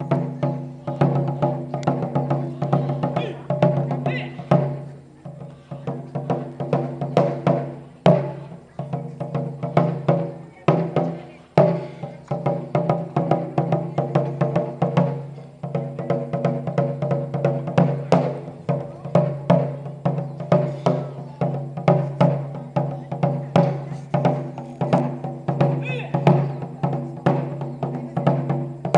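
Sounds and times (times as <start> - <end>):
drums struck with sticks: 0.0 - 28.9.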